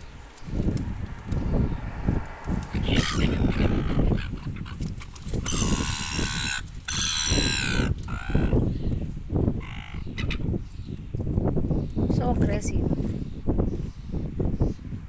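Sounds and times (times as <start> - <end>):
low rumble: 0.6 - 4.8
birds squawking: 2.6 - 10.6.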